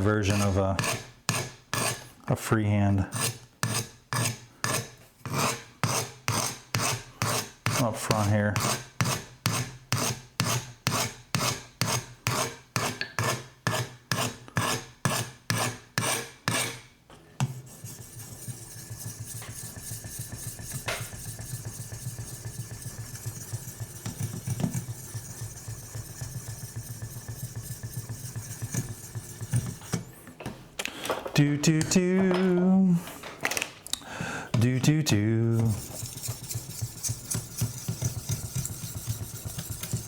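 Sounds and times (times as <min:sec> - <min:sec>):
knife rasping on sharpening stone: 0:00.0 - 0:02.0, 0:03.1 - 0:16.8, 0:17.5 - 0:30.1, 0:35.6 - 0:40.0
fast scraping: 0:17.6 - 0:30.1, 0:35.4 - 0:40.0.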